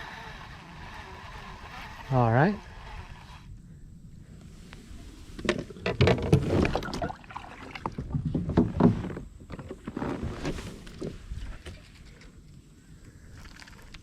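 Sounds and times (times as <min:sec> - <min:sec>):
paddle splashes: 0:06.4 - 0:08.2.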